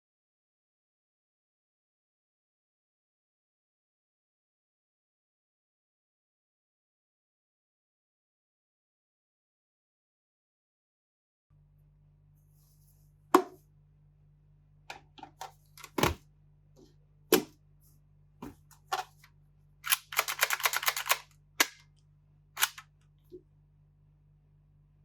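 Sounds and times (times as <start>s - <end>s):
toy pistol plastic clicks: 19.8s - 21.8s, 22.6s - 22.9s.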